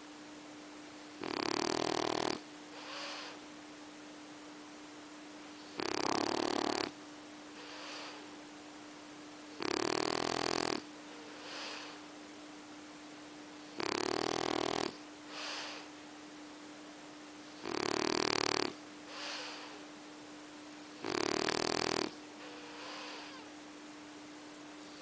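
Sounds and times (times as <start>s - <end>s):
faint steady hum: 0.0s - 25.0s
pet snoring: 1.2s - 3.4s, 5.6s - 7.0s, 7.6s - 8.3s, 9.5s - 12.0s, 13.7s - 15.9s, 17.6s - 19.8s, 21.0s - 23.5s.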